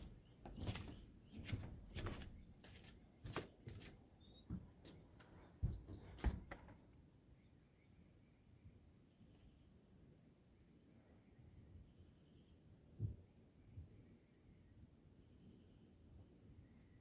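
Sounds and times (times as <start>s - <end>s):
faint knocks and clicks: 4.5s - 6.8s.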